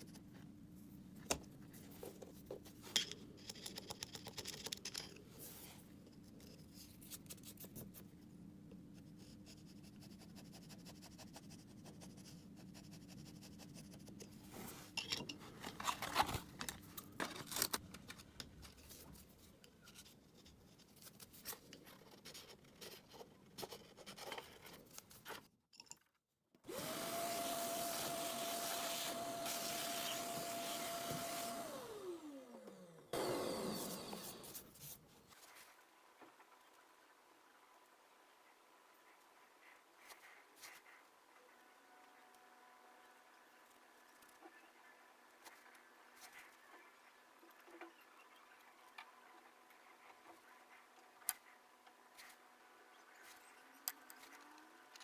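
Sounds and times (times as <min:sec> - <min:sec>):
small electric motor running: 0:26.7 - 0:34.7.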